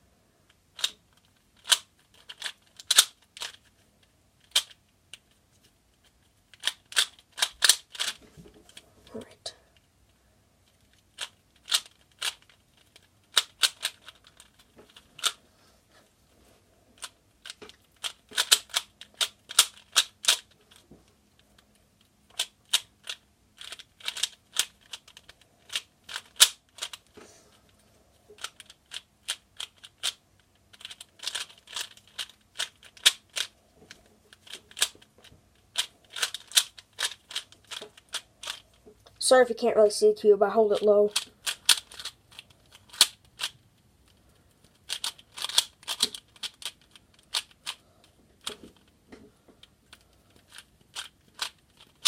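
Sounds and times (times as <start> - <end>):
plastic speed cube clicking turns: 0.5 - 5.4, 6.0 - 8.8, 10.6 - 15.4, 17.0 - 27.8, 28.4 - 38.8, 41.1 - 49.0, 49.6 - 52.0.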